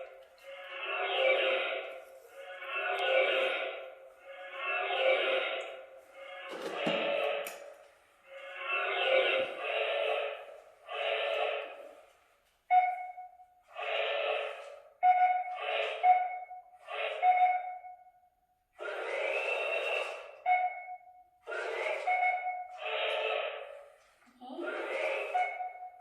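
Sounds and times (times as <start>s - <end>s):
toy robot electronic sound effects: 0.0s - 7.6s, 18.8s - 20.7s, 21.4s - 23.7s, 24.4s - 26.0s
steady beep tone: 12.7s - 13.5s, 15.0s - 18.2s, 19.7s - 23.4s, 24.7s - 26.0s.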